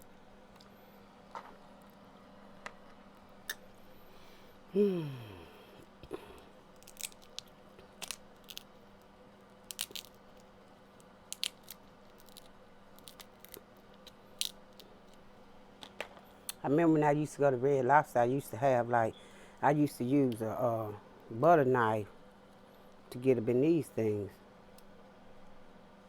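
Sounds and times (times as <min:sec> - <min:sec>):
short falling vocal sound: 0:04.7 - 0:06.4
crab shells cracking: 0:06.0 - 0:16.2.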